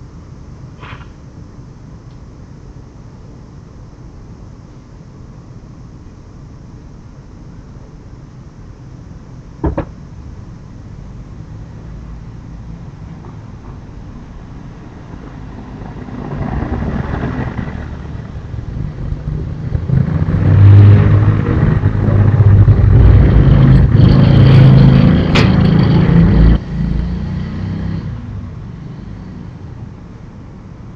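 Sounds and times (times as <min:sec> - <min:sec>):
sharp click: 0:00.8 - 0:01.2.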